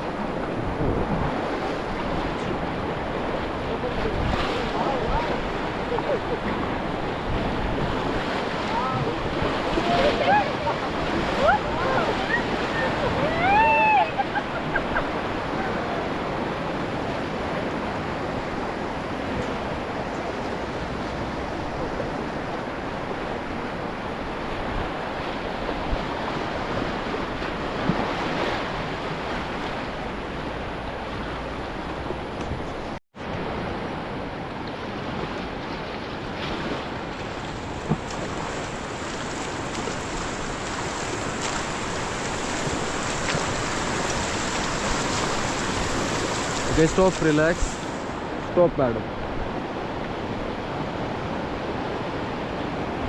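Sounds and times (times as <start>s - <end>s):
wind buffeting microphone: 0.0s - 28.1s, 34.8s - 48.6s
river water rushing: 0.0s - 53.0s.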